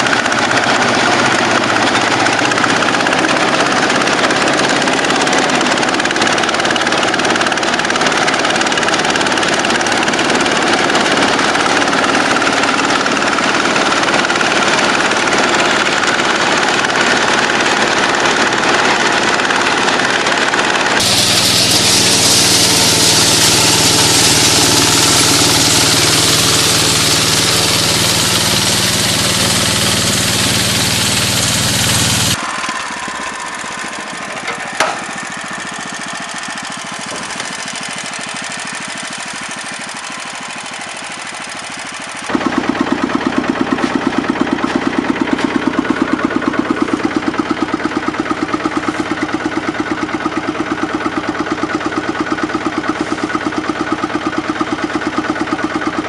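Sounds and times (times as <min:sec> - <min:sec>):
fast engine thumping: 0:00.0 - 0:56.0
loud farm machinery engine: 0:00.0 - 0:56.0
strong hiss: 0:21.0 - 0:32.4
quiet machine noise: 0:21.0 - 0:35.9.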